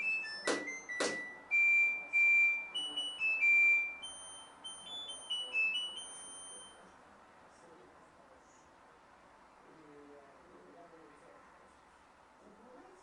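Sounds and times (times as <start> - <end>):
washing machine beeper melody: 0.0 - 6.8.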